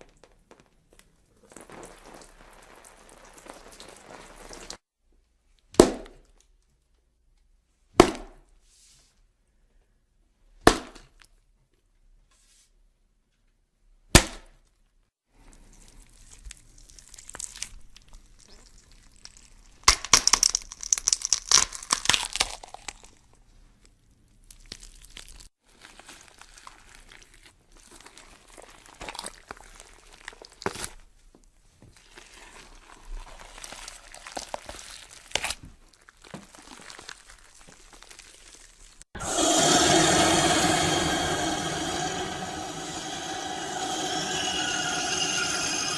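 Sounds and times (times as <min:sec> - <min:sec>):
cracking and breaking sounds: 0:19.8 - 0:23.1
loud rushing noise: 0:39.2 - 0:45.9
sharp hit: 0:39.2 - 0:45.9.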